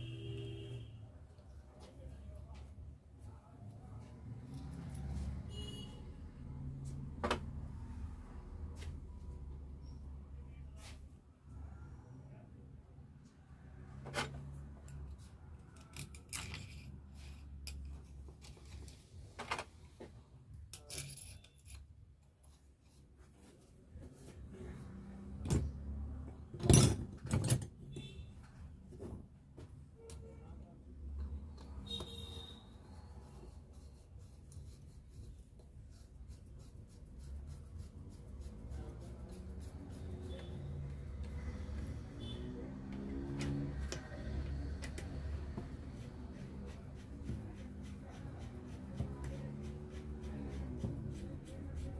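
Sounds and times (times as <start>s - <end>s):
metal tools clinking and scraping: 15.7s - 19.1s, 20.7s - 22.0s
hand scraping metal part: 20.8s - 22.0s.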